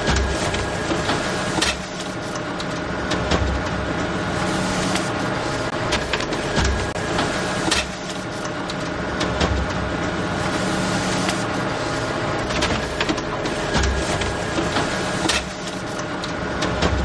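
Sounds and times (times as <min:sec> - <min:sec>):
photocopier whirring: 0:03.8 - 0:09.0
photocopier clunks: 0:04.4 - 0:07.9.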